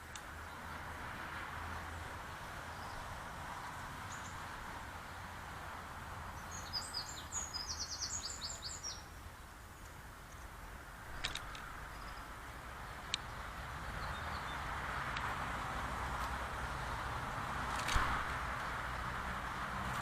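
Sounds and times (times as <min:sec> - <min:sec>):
outdoor background hum: 0:00.0 - 0:20.0
small bird chirping: 0:06.4 - 0:09.2, 0:11.8 - 0:12.4.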